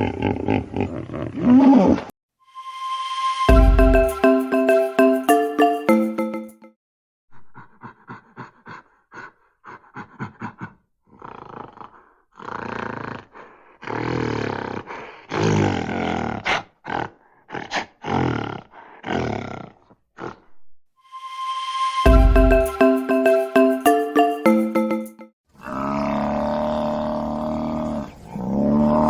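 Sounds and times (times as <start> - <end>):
large wild animal roaring: 25.6 - 29.0.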